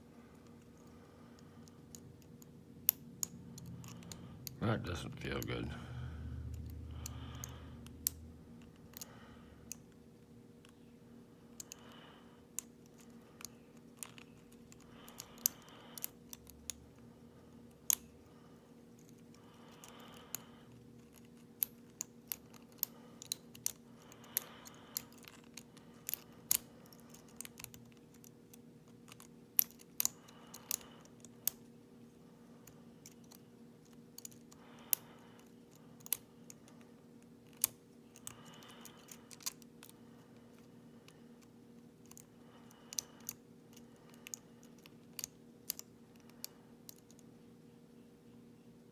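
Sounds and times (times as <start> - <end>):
lock pick clicking on metal pins: 1.6 - 4.6, 6.5 - 10.0, 11.5 - 17.0, 17.6 - 18.2, 18.9 - 31.7, 32.6 - 40.0, 41.0 - 47.3.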